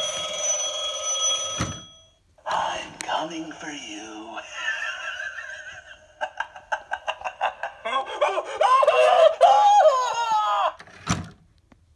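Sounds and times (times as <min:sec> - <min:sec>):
tinny recorded laughter: 0:04.4 - 0:09.4.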